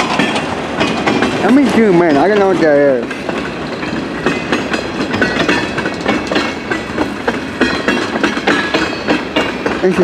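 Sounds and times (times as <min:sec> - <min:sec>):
train wheels clattering over rails: 0:00.0 - 0:10.0.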